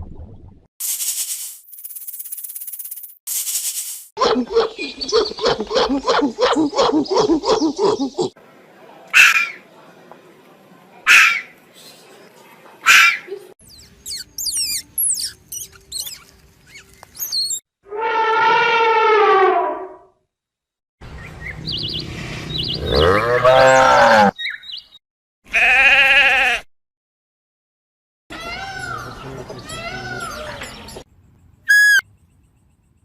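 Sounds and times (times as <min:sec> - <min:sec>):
high bird chirps: 0:13.6 - 0:17.6, 0:24.3 - 0:25.0, 0:31.7 - 0:32.8
goat bleating: 0:25.5 - 0:26.7.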